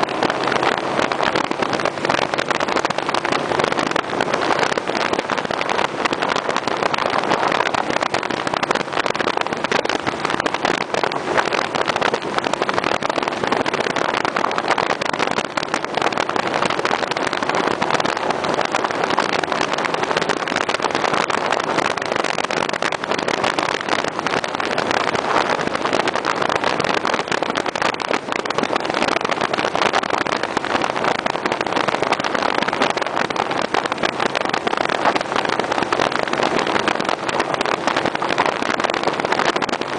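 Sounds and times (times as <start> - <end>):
motorcycle engine cruising: 0.0 - 39.9
wind and road rush: 0.0 - 39.9.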